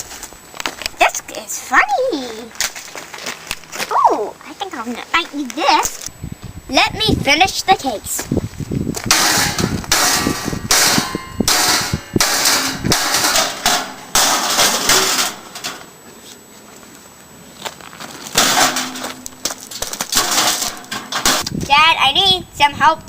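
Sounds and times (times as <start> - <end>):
metal case clanging and scraping: 9.1 - 15.9, 18.0 - 21.5.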